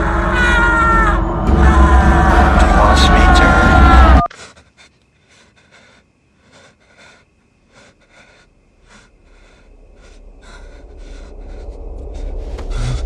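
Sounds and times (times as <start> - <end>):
person breathing heavily: 4.3 - 13.0
low rumble: 9.4 - 13.0.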